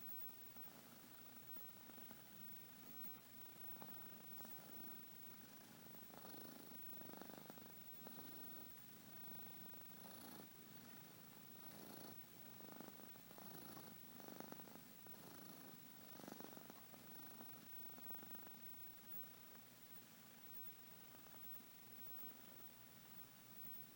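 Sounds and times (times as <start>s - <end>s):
cat snoring: 3.8s - 18.6s.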